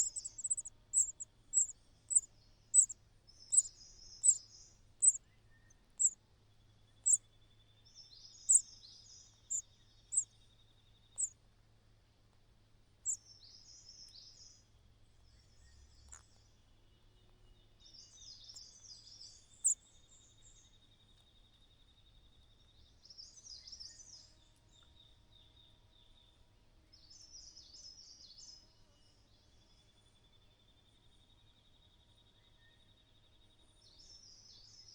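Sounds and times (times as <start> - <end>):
sharp loud bird chirps: 0.0 - 2.9, 3.5 - 4.4
small birds warbling: 0.0 - 6.2, 7.0 - 7.2, 8.4 - 10.3, 11.1 - 11.4, 18.4 - 19.8.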